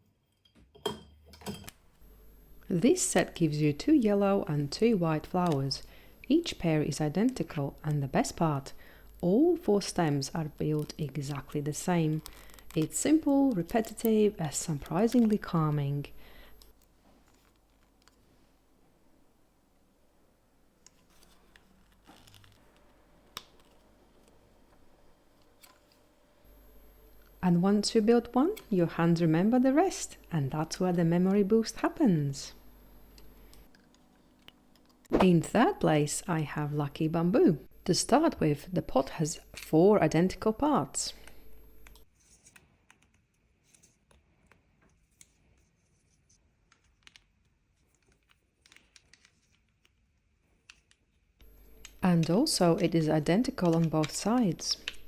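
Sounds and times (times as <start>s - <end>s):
plastic bricks rustling and clicking: 46.6s - 51.0s.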